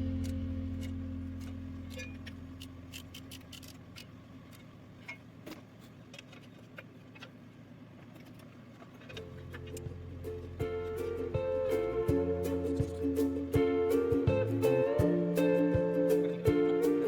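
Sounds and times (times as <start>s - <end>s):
background music: 10.3s - 17.0s.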